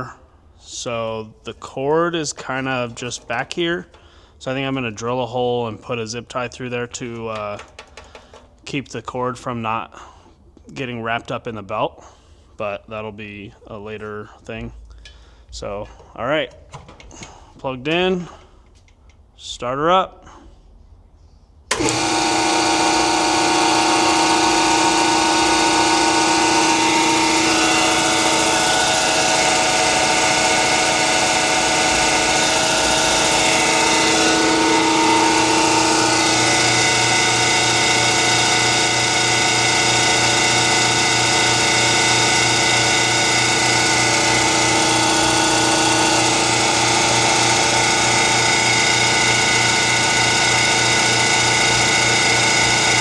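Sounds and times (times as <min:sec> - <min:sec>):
air compressor running: 0:21.7 - 0:53.0.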